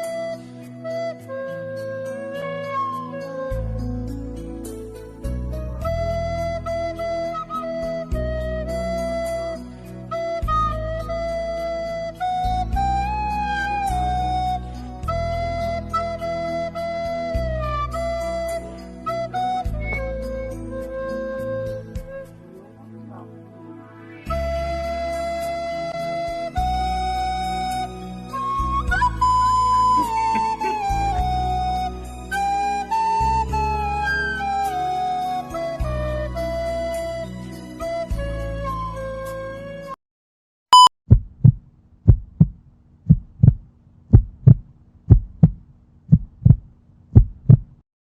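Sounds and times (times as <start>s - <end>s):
flute melody: 0.0s - 4.9s, 5.5s - 40.0s
soft instrumental music: 0.0s - 40.0s
short high beep: 40.7s - 40.9s
heartbeat thumps: 40.8s - 47.8s.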